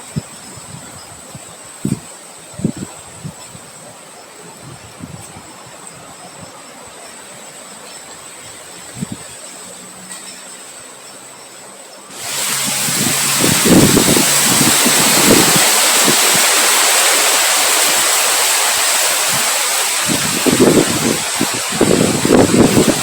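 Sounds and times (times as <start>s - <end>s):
low gusts of wind: 0.0s - 9.9s, 12.1s - 23.0s
heavy rain: 12.1s - 23.0s.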